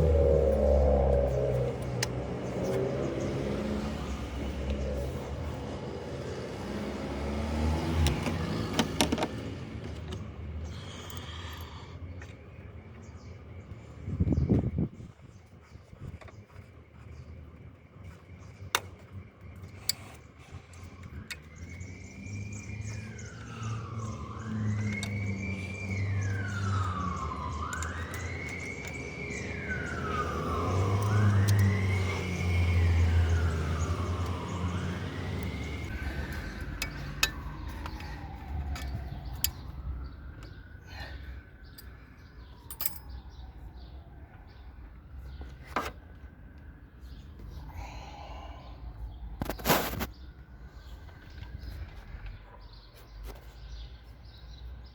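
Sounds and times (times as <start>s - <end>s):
emergency siren wailing: 0.0s - 9.7s, 20.6s - 52.3s
low traffic rumble: 0.0s - 54.9s.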